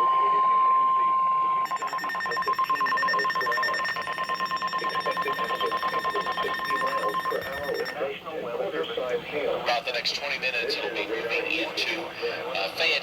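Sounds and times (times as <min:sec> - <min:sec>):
high-pitched alarm tone: 0:01.6 - 0:08.0.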